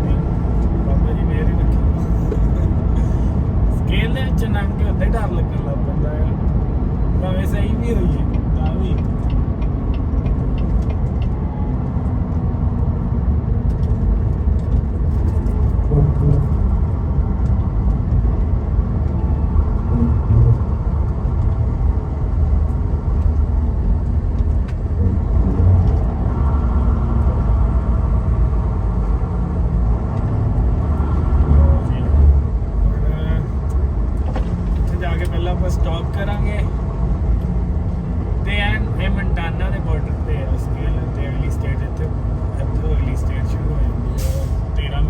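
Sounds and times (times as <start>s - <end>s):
truck engine and road rumble: 0.0s - 45.0s.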